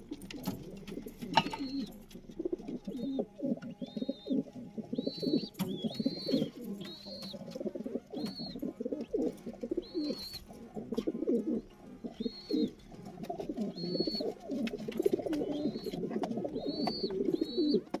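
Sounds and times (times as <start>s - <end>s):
pigeons cooing: 0.0s - 18.0s
high whistled peeps: 1.4s - 1.9s, 2.9s - 7.5s, 8.1s - 8.6s, 9.7s - 10.5s, 12.1s - 12.8s, 13.7s - 14.4s, 15.2s - 17.9s.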